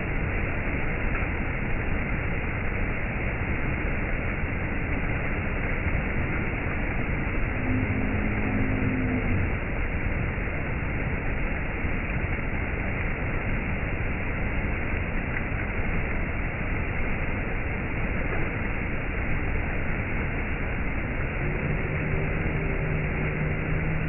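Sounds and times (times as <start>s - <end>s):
low steady hum: 0.0s - 24.0s
waterfall rushing: 5.5s - 10.8s, 16.5s - 24.0s.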